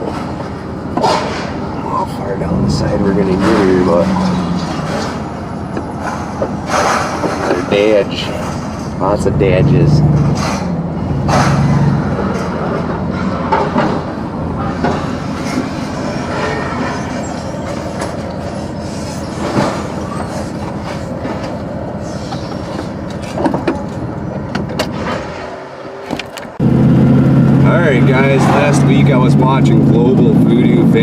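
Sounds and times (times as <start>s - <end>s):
vehicle road noise: 0.0s - 31.0s
rattles and knocks: 10.0s - 16.0s, 22.3s - 25.3s.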